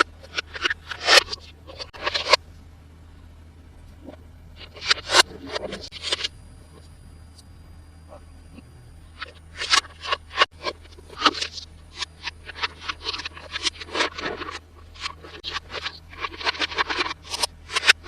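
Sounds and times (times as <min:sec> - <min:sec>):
toy packaging scraping and crinkling: 0:09.2 - 0:18.0.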